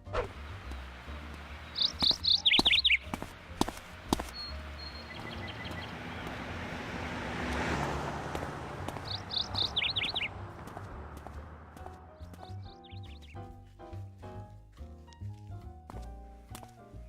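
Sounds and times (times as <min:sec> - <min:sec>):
birds chirping: 0:00.0 - 0:14.2
car passing by: 0:00.1 - 0:13.2.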